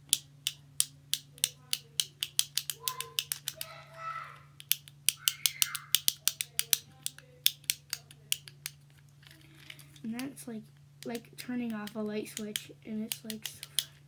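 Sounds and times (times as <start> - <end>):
plastic toggle switch clicking: 0.1 - 3.7, 4.6 - 8.8, 11.0 - 14.0.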